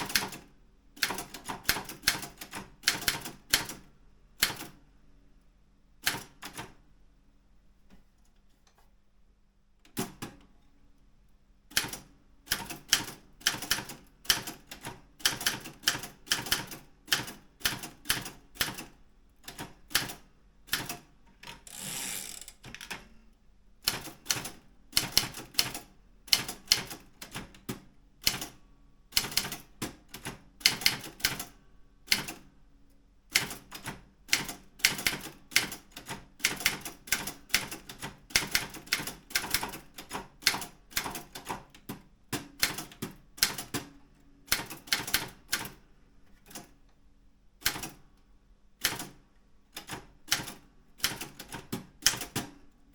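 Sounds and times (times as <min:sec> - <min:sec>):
typewriter rasping: 0:21.5 - 0:23.0.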